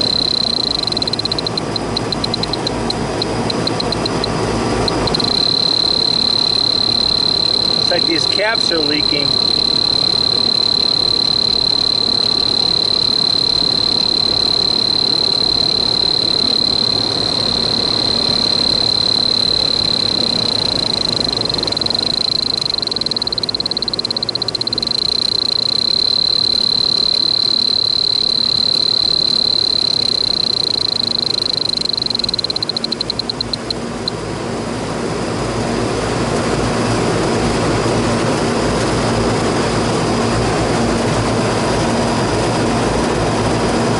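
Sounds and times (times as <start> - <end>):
high-pitched insect drone: 0.0 - 33.8
air-conditioning units humming: 0.0 - 43.9.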